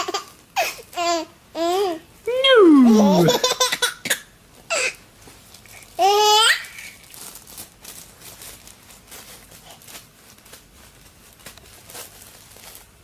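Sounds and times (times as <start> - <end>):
baby squealing with laughter: 2.4 - 3.7.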